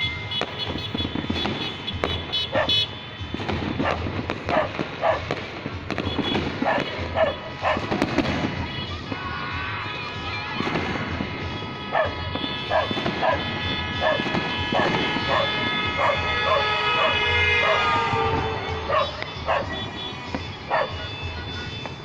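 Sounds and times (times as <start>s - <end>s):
firecrackers banging: 0.0s - 22.0s
dog barking: 2.5s - 2.9s, 3.8s - 5.3s, 6.6s - 8.0s, 11.9s - 17.9s, 18.8s - 19.9s, 20.7s - 21.1s
background music: 2.9s - 22.0s.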